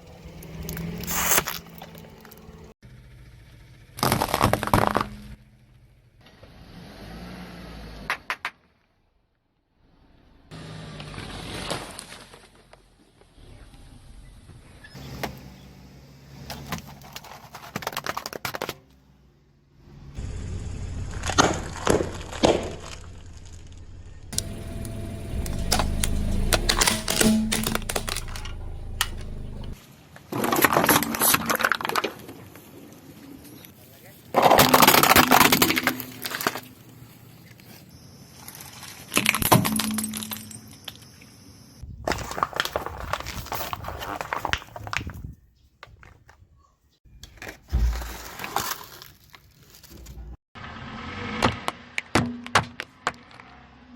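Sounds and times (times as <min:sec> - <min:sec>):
low engine hum: 0:00.0 - 0:06.2, 0:19.8 - 0:29.8
car tyres crushing objects: 0:00.1 - 0:02.7, 0:03.9 - 0:06.6, 0:16.2 - 0:19.2, 0:20.9 - 0:32.8, 0:34.3 - 0:41.1, 0:42.0 - 0:45.2, 0:47.2 - 0:53.8
low ringing tone: 0:24.4 - 0:29.8.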